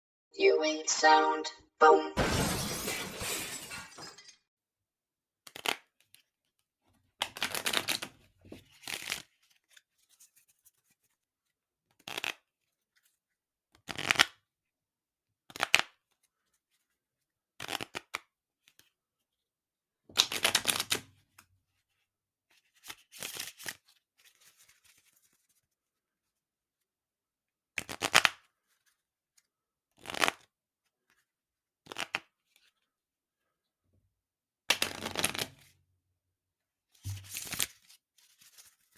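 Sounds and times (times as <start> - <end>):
playing cards being shuffled: 37.1 - 37.8.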